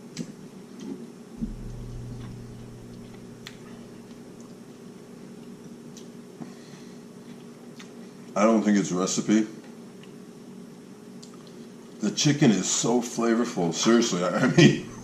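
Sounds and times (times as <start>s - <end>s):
low drone: 1.4s - 5.0s, 14.6s - 15.0s
steady low hum: 1.4s - 8.1s, 14.2s - 15.0s.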